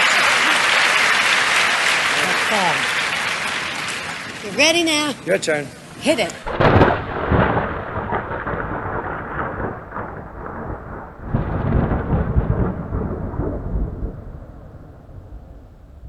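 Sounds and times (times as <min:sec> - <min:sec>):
rain: 0:00.0 - 0:16.0
rolling thunder: 0:06.4 - 0:16.0.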